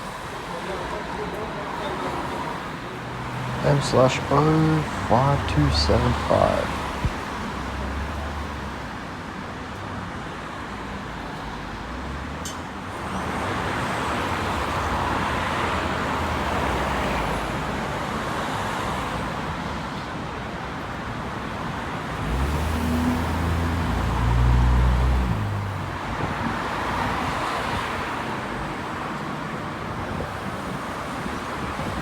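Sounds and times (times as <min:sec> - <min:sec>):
bus engine rumble: 0:00.0 - 0:07.9
road traffic hum: 0:00.0 - 0:32.0.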